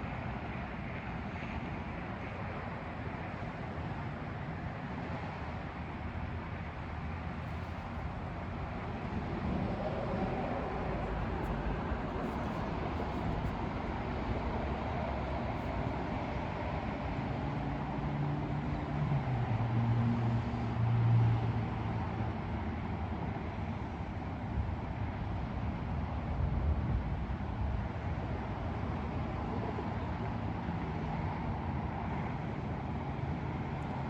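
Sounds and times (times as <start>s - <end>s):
outdoor background noise: 0.0s - 34.0s
passing vehicle engine hum: 4.9s - 24.3s.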